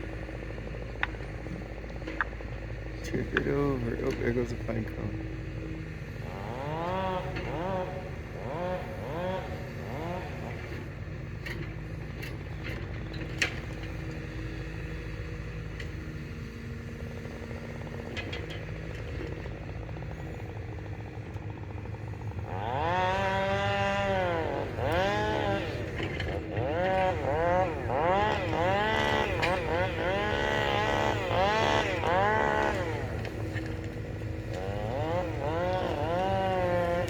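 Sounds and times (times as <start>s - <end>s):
chainsaw revving: 3.0s - 12.0s, 21.9s - 37.0s.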